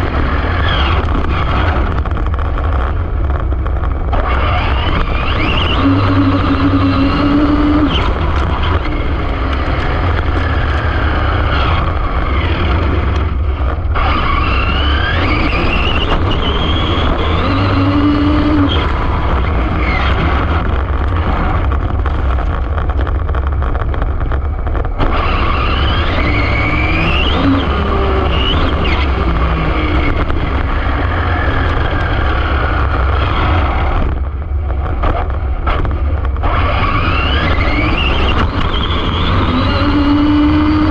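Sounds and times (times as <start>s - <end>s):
heavy wind: 0.0s - 40.9s
rc car motor whine: 4.1s - 21.6s, 25.0s - 34.2s, 35.4s - 40.9s.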